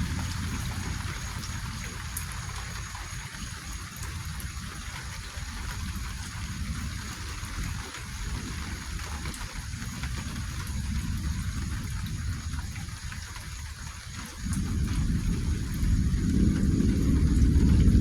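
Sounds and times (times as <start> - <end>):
low rumble: 0.0 - 3.0
steady rain: 0.0 - 18.0.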